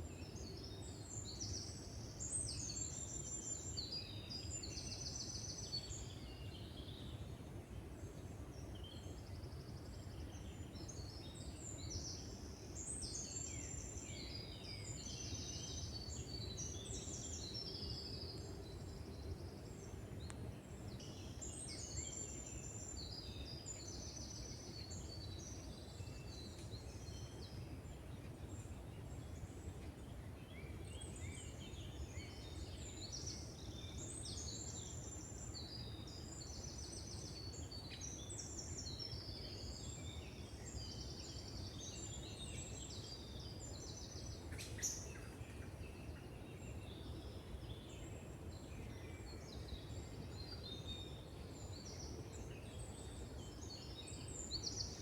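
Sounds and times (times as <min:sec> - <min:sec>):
songbirds singing: 0:00.0 - 0:55.0.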